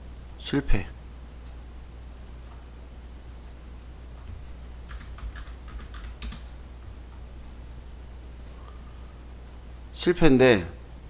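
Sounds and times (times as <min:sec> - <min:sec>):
typing on computer keyboard: 0:03.7 - 0:06.6.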